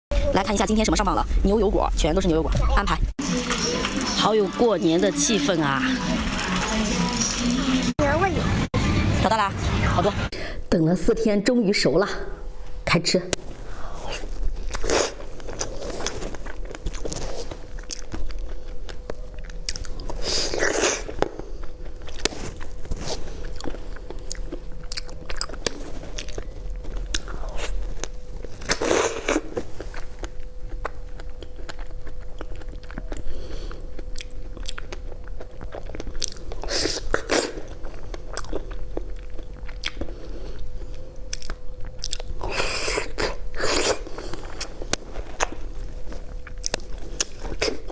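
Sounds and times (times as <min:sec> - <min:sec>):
person biting and chewing: 0:14.0 - 0:47.9.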